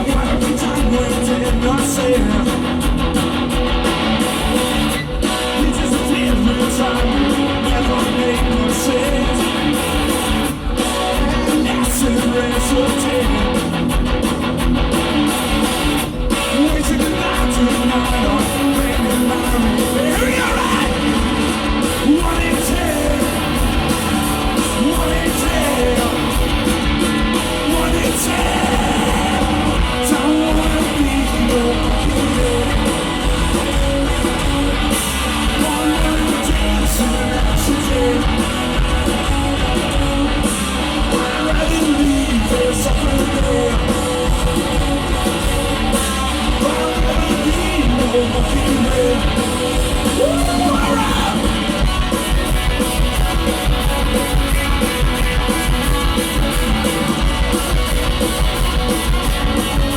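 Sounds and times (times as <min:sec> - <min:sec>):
electric guitars: 0:00.0 - 0:59.9
rock band playing live: 0:00.0 - 0:59.9
person singing: 0:05.4 - 0:09.7, 0:10.9 - 0:13.6, 0:16.4 - 0:21.2, 0:22.0 - 0:23.6, 0:24.4 - 0:26.6, 0:27.6 - 0:34.0, 0:35.4 - 0:38.8, 0:41.0 - 0:44.2, 0:46.4 - 0:51.7.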